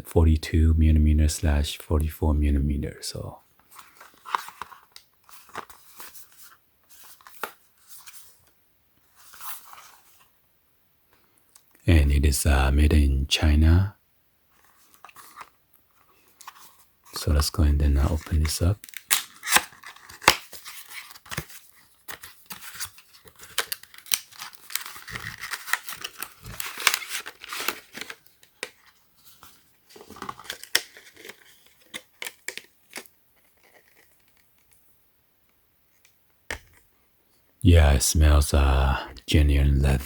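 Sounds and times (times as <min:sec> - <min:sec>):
packaging rustling and tearing: 0:18.1 - 0:34.8.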